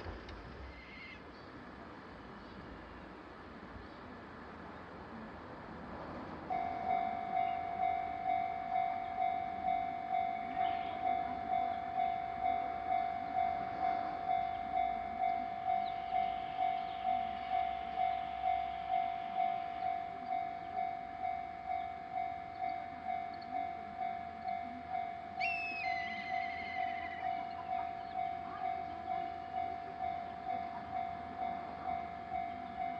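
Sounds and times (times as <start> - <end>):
level crossing alarm bell: 6.5 - 32.9.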